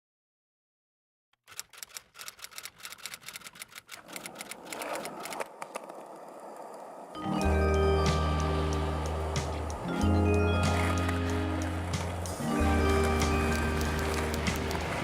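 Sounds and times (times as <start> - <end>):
rapid irregular clicking: 1.4 - 6.0.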